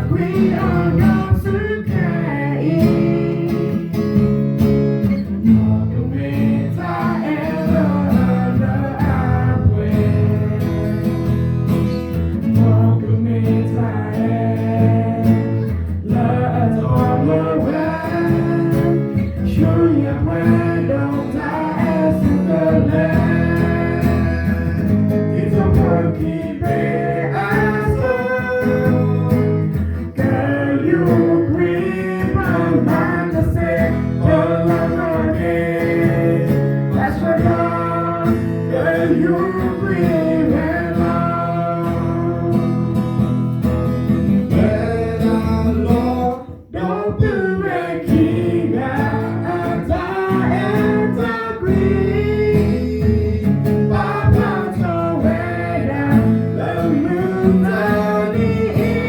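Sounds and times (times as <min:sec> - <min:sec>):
guitar accompaniment: 0:00.0 - 0:59.0
person singing: 0:16.0 - 0:29.5, 0:44.5 - 0:59.0.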